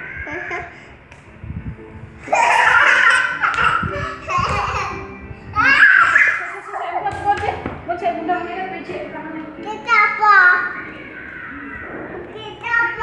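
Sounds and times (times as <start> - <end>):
child laughing and squealing: 2.3 - 5.0, 5.6 - 6.6.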